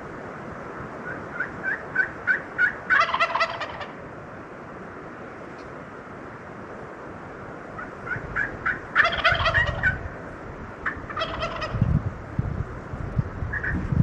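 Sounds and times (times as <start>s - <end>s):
turkey gobbling: 1.0s - 4.0s, 7.8s - 10.0s, 10.8s - 11.8s.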